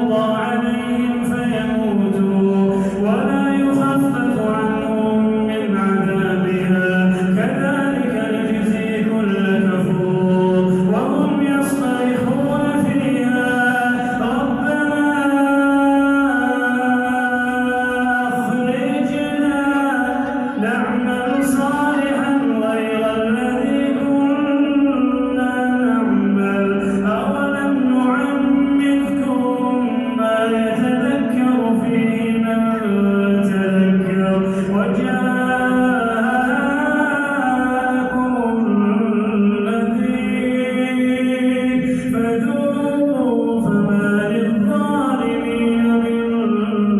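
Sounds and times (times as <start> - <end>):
man chanting melodically: 0.0 - 46.9.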